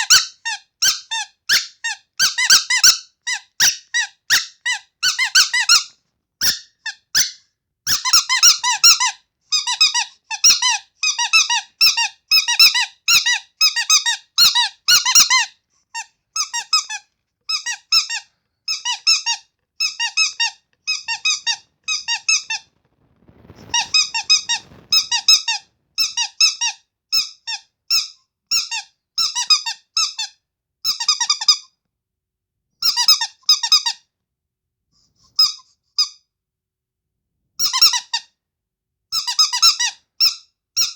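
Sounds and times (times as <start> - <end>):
squeaky toy squeaking: 0.0 - 22.7, 23.7 - 31.7, 32.8 - 34.0, 35.4 - 36.2, 39.1 - 40.9
low rustling: 20.7 - 26.0.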